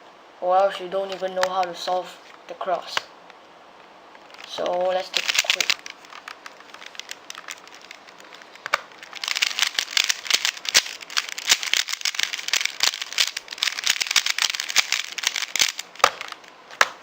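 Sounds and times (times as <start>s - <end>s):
puzzle cube clicking: 4.3s - 17.0s.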